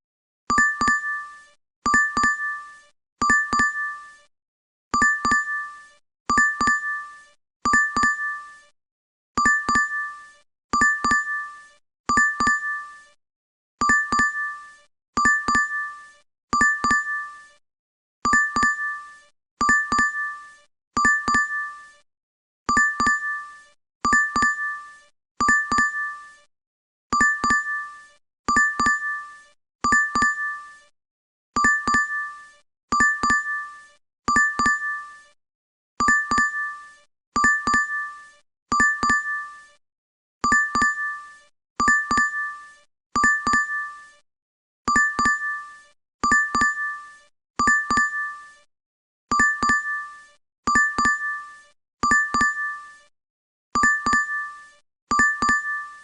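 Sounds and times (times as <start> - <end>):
app notification double ding: 12.1 - 12.7.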